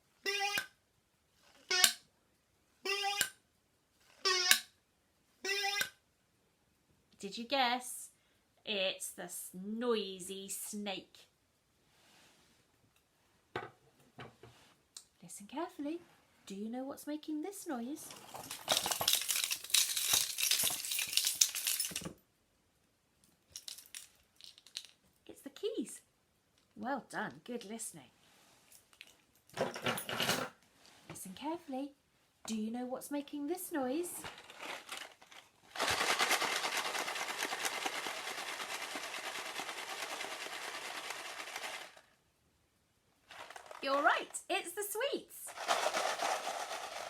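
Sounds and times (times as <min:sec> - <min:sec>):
sweets rattling when shaken: 0:18.0 - 0:22.2, 0:23.5 - 0:25.0, 0:34.0 - 0:42.1, 0:43.3 - 0:44.4, 0:45.4 - 0:47.0
keys jingling: 0:18.1 - 0:22.2, 0:23.5 - 0:24.9.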